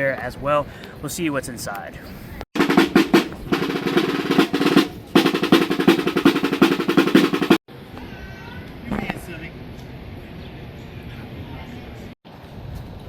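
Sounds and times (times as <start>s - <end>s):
snare drum roll: 2.6s - 7.6s.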